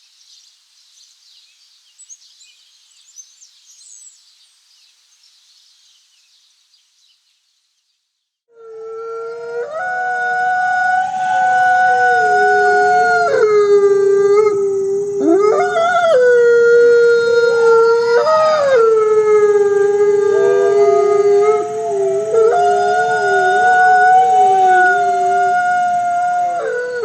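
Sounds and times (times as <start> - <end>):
chorus of howls: 8.6 - 27.0.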